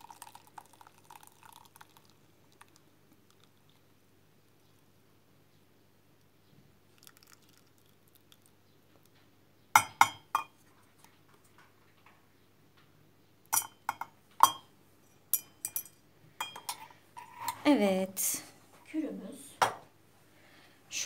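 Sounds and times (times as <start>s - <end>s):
kitchenware clinking against mug: 9.8s - 10.6s, 13.5s - 17.6s.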